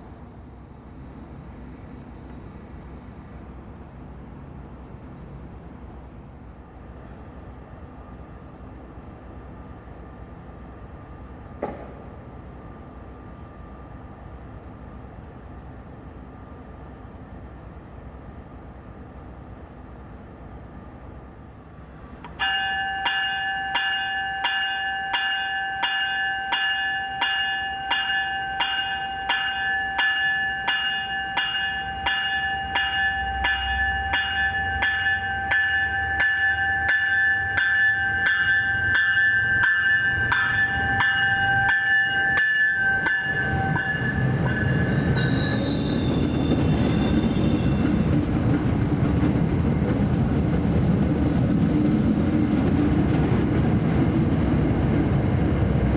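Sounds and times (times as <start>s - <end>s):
train rumbling past: 0.0s - 55.9s
locomotive bell ringing: 22.3s - 48.3s.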